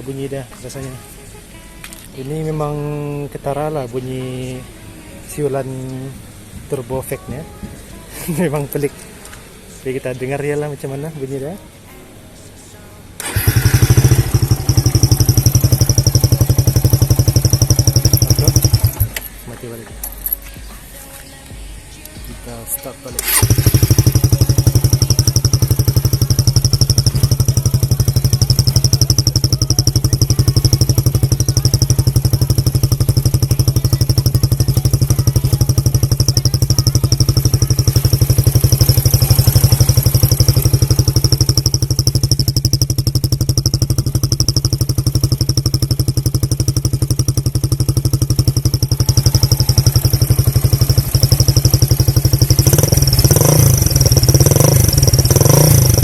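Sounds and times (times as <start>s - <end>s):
motorcycle engine idling: 13.2s - 20.4s, 22.6s - 56.0s.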